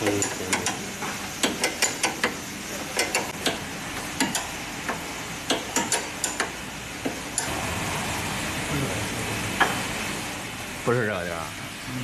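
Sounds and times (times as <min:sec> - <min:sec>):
tools and metal parts clicking: 0:01.4 - 0:03.6, 0:05.5 - 0:06.5.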